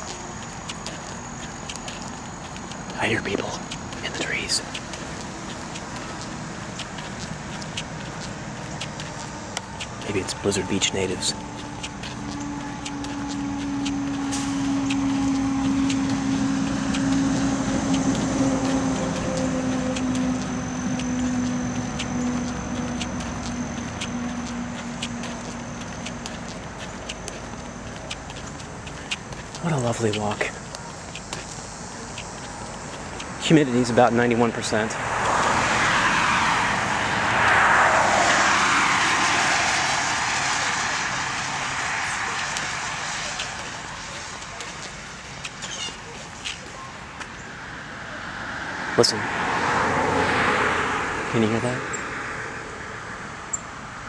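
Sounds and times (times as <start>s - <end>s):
faint regular ticking: 0.0s - 35.6s
steady mechanical hum: 0.0s - 48.2s
passing vehicle rushing: 2.3s - 30.7s, 31.7s - 46.6s, 47.4s - 54.0s.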